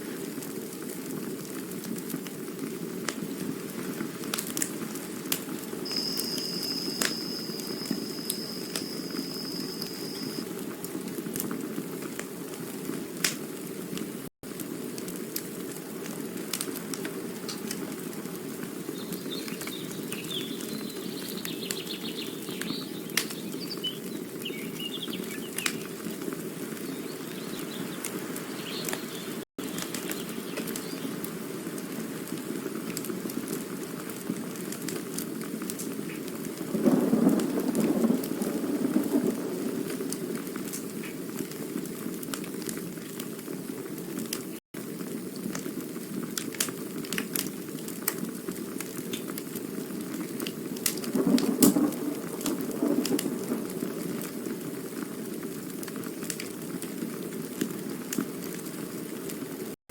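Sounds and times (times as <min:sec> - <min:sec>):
campfire crackling: 0:00.0 - 0:59.8
thin high whistle: 0:05.8 - 0:10.4
birds chirping: 0:05.9 - 0:10.4, 0:18.9 - 0:26.1, 0:26.8 - 0:31.2.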